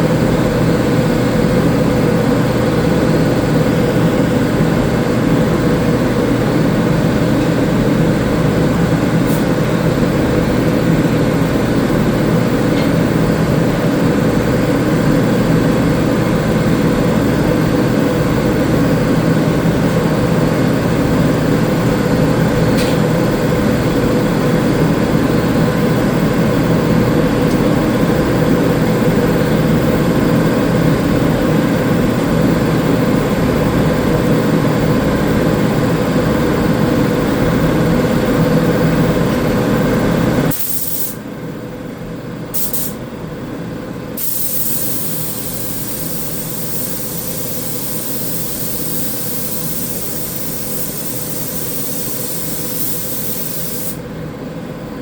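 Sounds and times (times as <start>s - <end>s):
paint spray gun hissing: 40.5s - 41.2s, 42.6s - 43.0s, 44.2s - 54.0s
loud motor hum: 44.2s - 54.0s.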